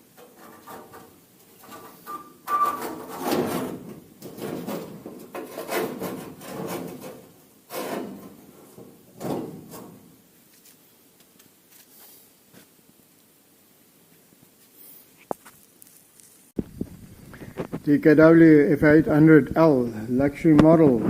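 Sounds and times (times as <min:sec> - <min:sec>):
rubbing and scraping strokes: 0:00.0 - 0:10.8.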